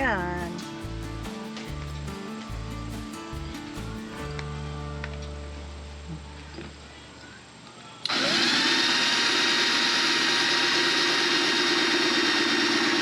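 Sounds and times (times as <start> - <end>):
power drill grinding ceramic: 8.1 - 13.0.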